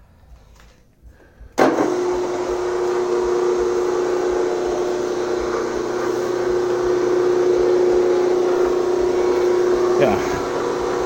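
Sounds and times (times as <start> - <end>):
electric disc sander humming: 1.6 - 11.0.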